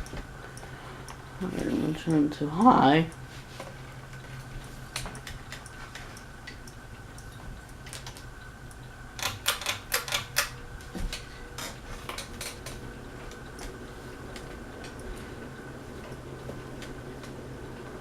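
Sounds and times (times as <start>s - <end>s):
ceiling fan motor hum: 0.0s - 18.0s
fan clicking: 0.0s - 18.0s.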